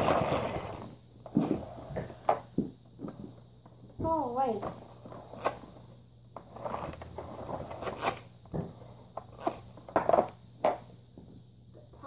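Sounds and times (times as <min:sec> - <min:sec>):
objects scraping and rustling: 0:00.0 - 0:03.4, 0:04.5 - 0:10.4.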